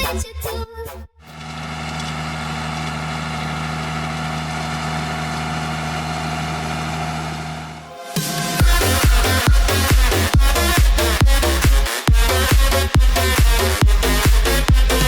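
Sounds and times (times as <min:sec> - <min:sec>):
music: 0:00.0 - 0:01.1, 0:07.8 - 0:15.0
tractor engine running steadily: 0:01.4 - 0:07.9.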